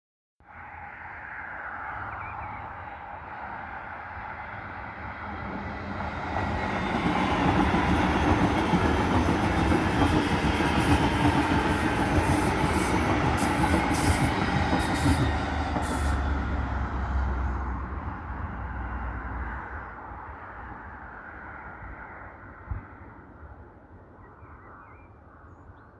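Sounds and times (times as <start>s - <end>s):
train wheels rumbling on rails: 5.0s - 18.7s.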